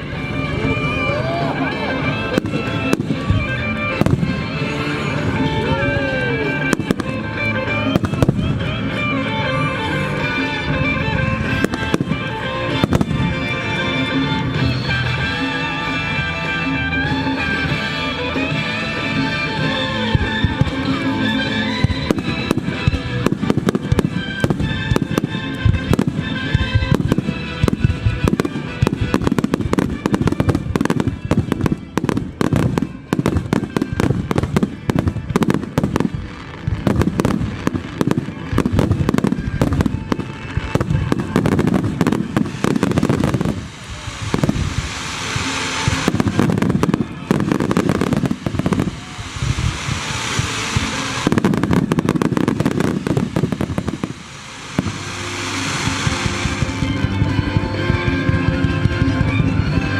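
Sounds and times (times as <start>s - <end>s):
music playing: 0.0s - 59.9s
firework shells bursting: 20.4s - 59.3s
high hiss: 20.8s - 58.7s.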